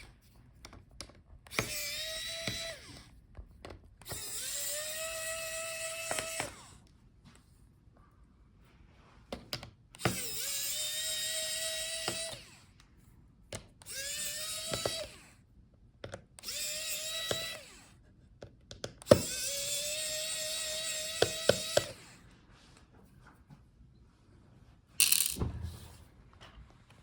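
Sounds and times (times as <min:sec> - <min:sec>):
clicks of bit and screws: 0:00.6 - 0:06.7, 0:13.5 - 0:15.2, 0:16.0 - 0:22.0, 0:25.0 - 0:25.4
electric screwdriver whining: 0:01.4 - 0:03.1, 0:04.0 - 0:06.8, 0:10.0 - 0:12.7, 0:13.8 - 0:15.4, 0:16.4 - 0:18.0, 0:19.0 - 0:22.2.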